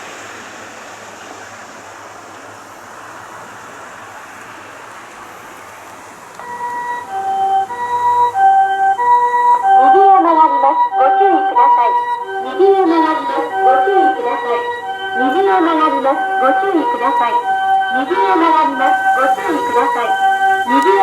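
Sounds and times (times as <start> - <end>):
ambulance siren hi-lo: 6.4 - 21.0.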